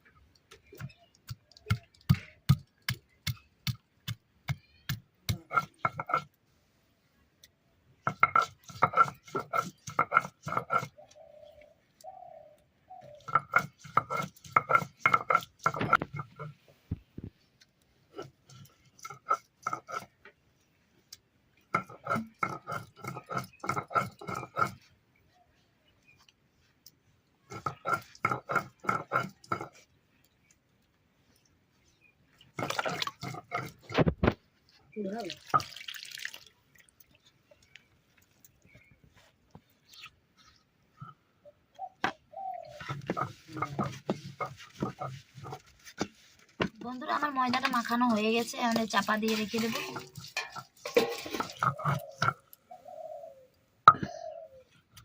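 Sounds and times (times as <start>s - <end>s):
grinding on a grinding stone: 8.1s - 11.0s, 13.2s - 16.6s, 18.1s - 20.2s, 21.7s - 24.9s, 27.5s - 29.9s, 32.6s - 34.2s, 42.8s - 45.8s, 47.4s - 52.5s
dove cooing: 10.8s - 13.6s, 41.8s - 45.1s, 51.2s - 54.8s
water being added: 35.2s - 37.2s, 49.6s - 52.1s.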